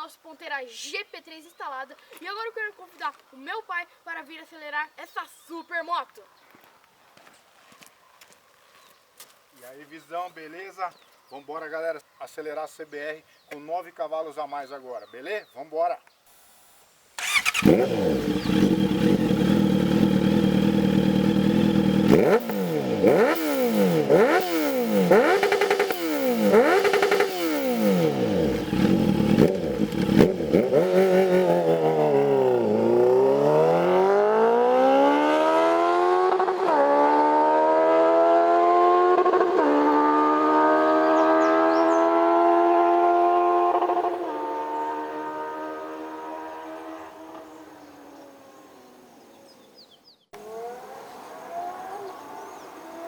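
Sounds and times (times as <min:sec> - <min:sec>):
motorcycle engine revving: 0:17.2 - 0:49.8, 0:50.4 - 0:53.0.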